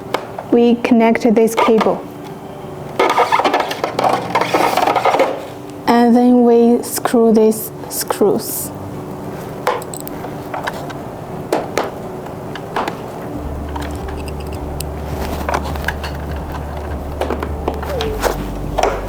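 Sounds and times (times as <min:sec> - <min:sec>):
steady low hum: 0:05.7 - 0:19.0.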